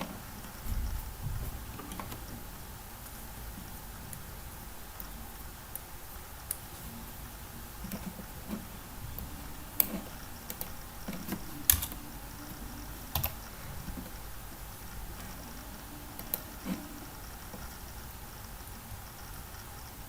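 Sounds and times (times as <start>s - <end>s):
low background hiss: 0.0s - 20.0s
keyboard clicks: 9.2s - 14.2s.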